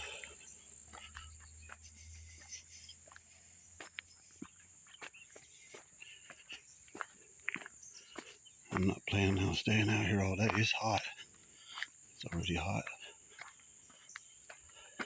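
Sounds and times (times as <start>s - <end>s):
insects droning: 0.0s - 15.0s.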